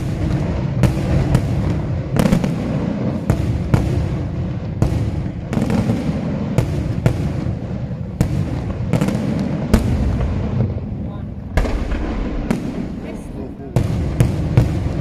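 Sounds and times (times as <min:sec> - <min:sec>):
fireworks bursting bangs: 0:00.0 - 0:15.0
low rumble of reports and echoes: 0:10.7 - 0:14.2.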